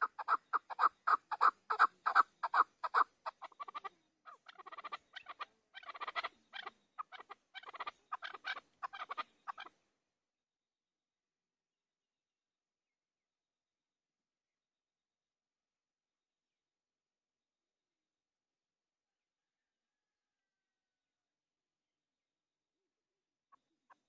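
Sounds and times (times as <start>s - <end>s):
partridge calling: 0.0s - 9.8s.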